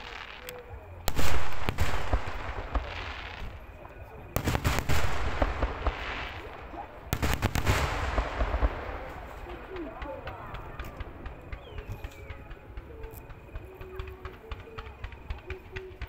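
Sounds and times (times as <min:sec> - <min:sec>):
fireworks banging: 0:00.0 - 0:16.0
fireworks hissing: 0:04.4 - 0:10.0.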